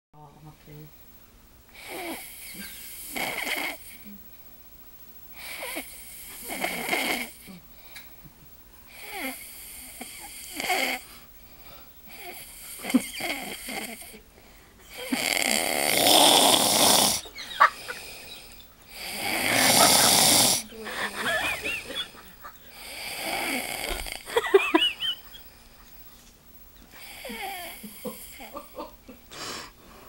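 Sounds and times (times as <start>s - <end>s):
person snoring: 5.4s - 7.6s, 8.9s - 11.2s, 12.1s - 14.2s, 14.9s - 25.1s, 27.0s - 28.6s.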